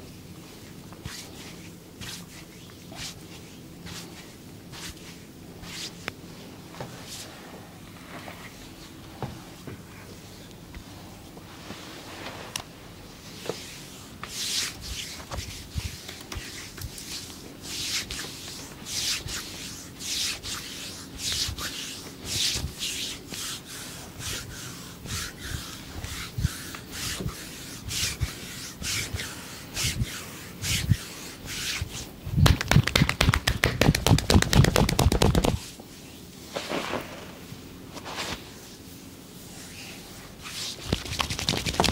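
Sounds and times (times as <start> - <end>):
hands scratching over body: 13.4 - 35.8, 36.5 - 41.9
hands slapping on body: 32.4 - 35.6.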